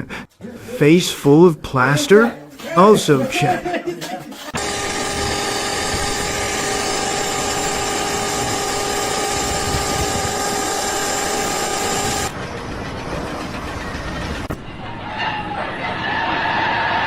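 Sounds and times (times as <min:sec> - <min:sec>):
machine whining over rumble: 0:04.6 - 0:15.0.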